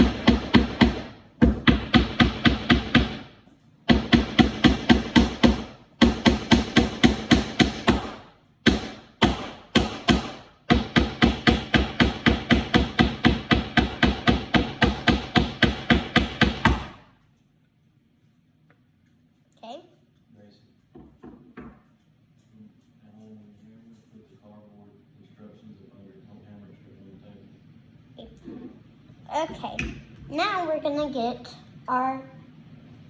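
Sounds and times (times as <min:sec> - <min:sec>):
hammer driving nails into wood: 0:00.0 - 0:17.1.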